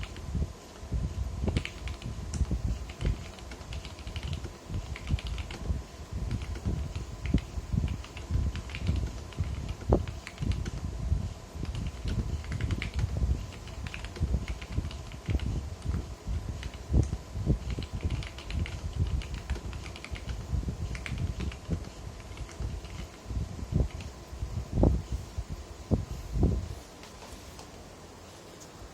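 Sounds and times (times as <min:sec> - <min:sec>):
mechanical keyboard typing: 0:01.5 - 0:05.7, 0:06.3 - 0:10.8, 0:11.6 - 0:16.0, 0:16.6 - 0:23.2.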